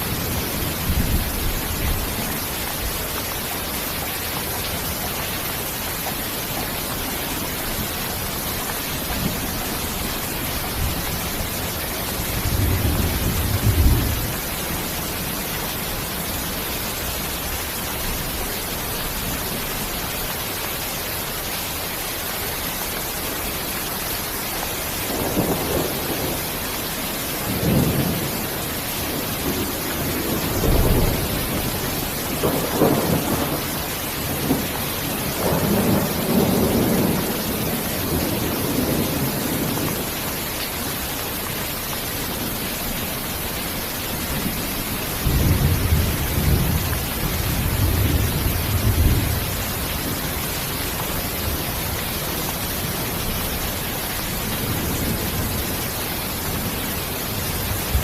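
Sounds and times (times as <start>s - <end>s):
heavy rain: 0.0s - 58.0s
rolling thunder: 9.0s - 14.9s, 27.5s - 34.7s, 35.3s - 40.0s, 45.2s - 50.4s.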